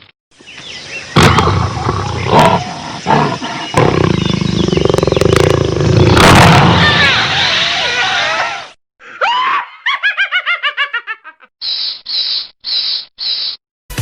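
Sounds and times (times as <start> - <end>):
jaguar growling and roaring: 1.2 - 7.2.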